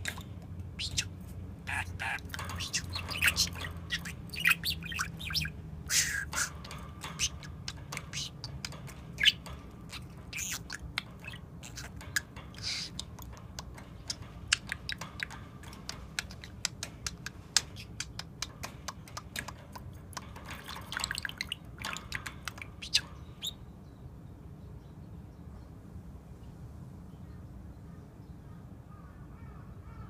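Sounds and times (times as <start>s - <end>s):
budgerigar clicking: 0.0s - 23.6s
bird chirps: 0.0s - 25.7s.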